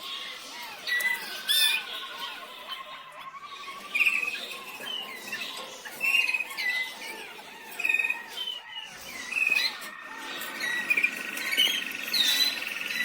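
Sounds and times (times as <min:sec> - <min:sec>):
canaries chirping: 0:00.0 - 0:13.0.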